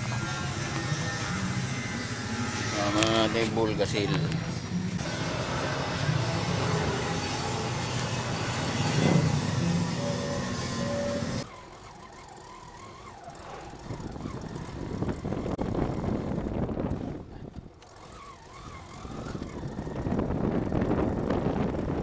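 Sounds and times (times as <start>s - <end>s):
road traffic noise: 0.0s - 22.0s
faint wavering tone: 8.8s - 11.4s.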